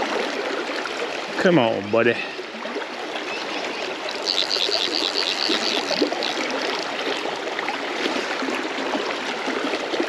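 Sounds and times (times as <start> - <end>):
river water rushing: 2.2 - 10.0
rapid high ticks: 4.1 - 6.9.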